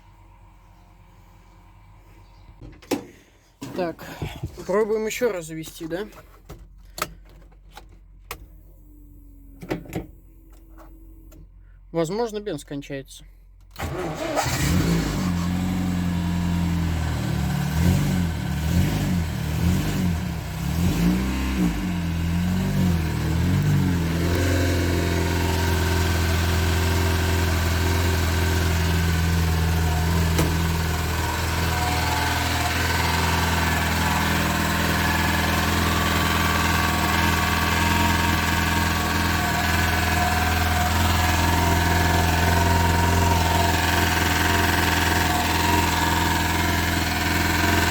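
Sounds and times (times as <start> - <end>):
car engine revving and idling: 13.8 - 47.9.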